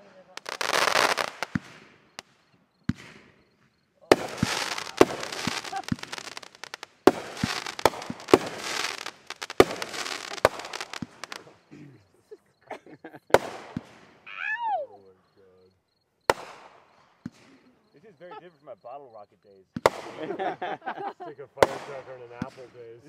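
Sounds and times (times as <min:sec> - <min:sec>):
firework booms: 0:00.0 - 0:11.7, 0:13.3 - 0:14.3, 0:16.3 - 0:18.3, 0:19.7 - 0:21.0, 0:21.6 - 0:23.0
firework crackling: 0:00.0 - 0:11.7, 0:13.3 - 0:14.7, 0:16.3 - 0:23.0.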